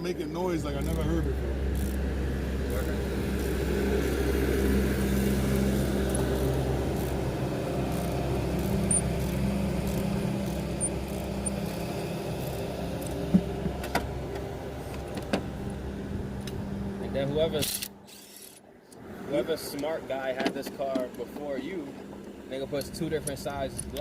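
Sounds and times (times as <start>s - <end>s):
low engine-like hum: 0.0s - 24.0s.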